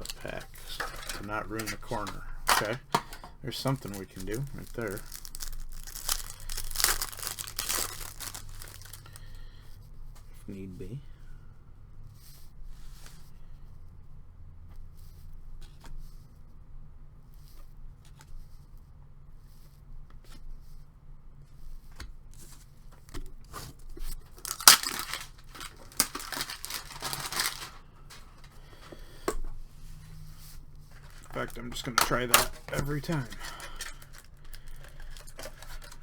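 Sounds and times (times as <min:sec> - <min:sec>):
wrapper tearing: 0:00.0 - 0:09.3, 0:24.2 - 0:28.5, 0:31.0 - 0:36.0
cards and packaging clicks: 0:00.0 - 0:09.4, 0:23.1 - 0:29.4, 0:30.9 - 0:36.0.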